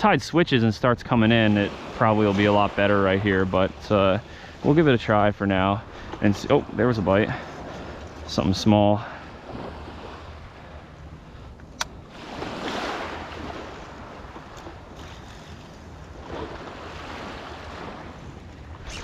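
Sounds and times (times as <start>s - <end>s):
ocean surf washing onto beach: 0.6s - 11.0s, 11.8s - 18.8s
sharp click: 11.7s - 12.0s.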